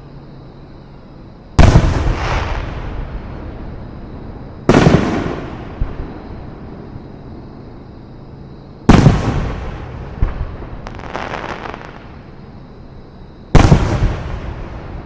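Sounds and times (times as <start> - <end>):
firework crackling: 4.7 - 6.1, 8.9 - 12.2
firework shell bursts booming: 4.7 - 6.1.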